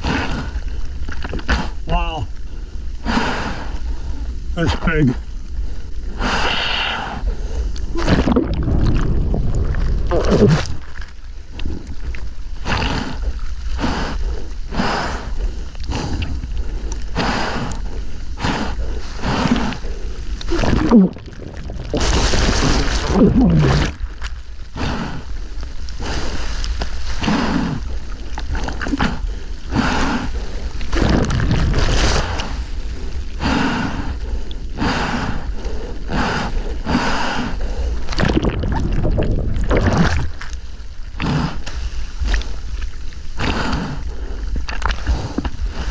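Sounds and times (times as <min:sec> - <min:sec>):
water rushing: 0:07.9 - 0:13.5, 0:19.1 - 0:24.4, 0:38.1 - 0:41.2.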